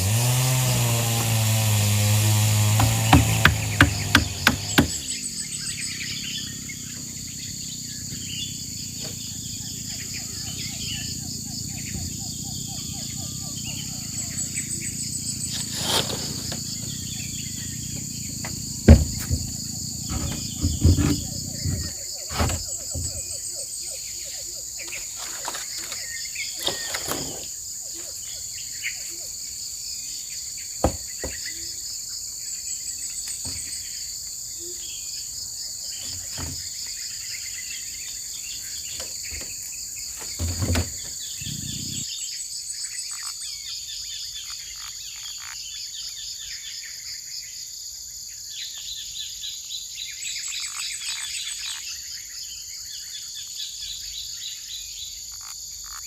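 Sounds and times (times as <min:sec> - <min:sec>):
forest insects chorus: 0:00.0 - 0:56.0
knocks and thumps: 0:02.4 - 0:05.0, 0:18.0 - 0:23.3, 0:30.8 - 0:31.4, 0:36.0 - 0:36.7, 0:40.2 - 0:42.0.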